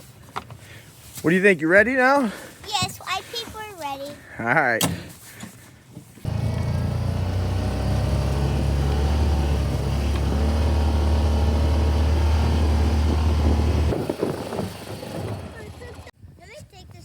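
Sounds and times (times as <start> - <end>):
vehicle engine droning: 6.2 - 16.1.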